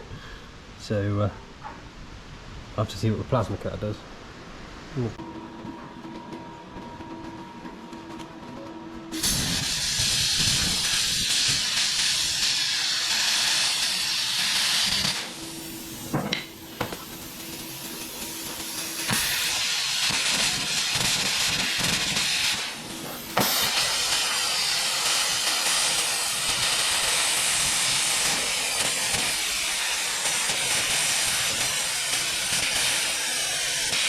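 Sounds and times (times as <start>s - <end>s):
steady hum: 4.0s - 34.0s
plasma cutter hissing: 9.1s - 34.0s.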